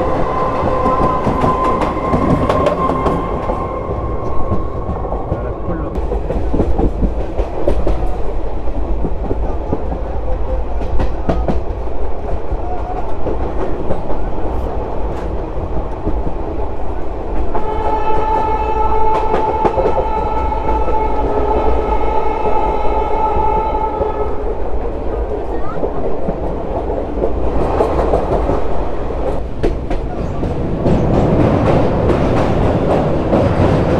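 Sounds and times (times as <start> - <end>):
clickety-clack of rails: 0.0 - 33.9
train wheel rumble: 0.0 - 33.9
locomotive horn held note: 17.6 - 24.4.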